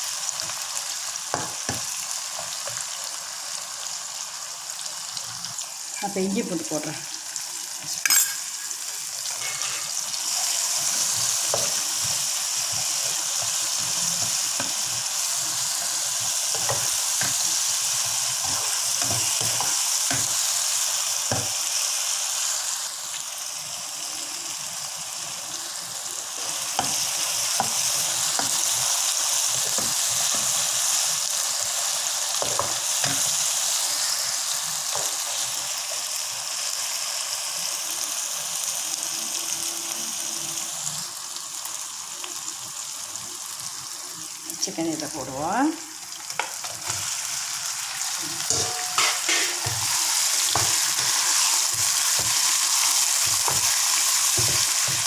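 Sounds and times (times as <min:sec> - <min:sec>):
food sizzling in hot oil: 0:00.0 - 0:55.0
spatula scraping a pan: 0:07.9 - 0:15.0.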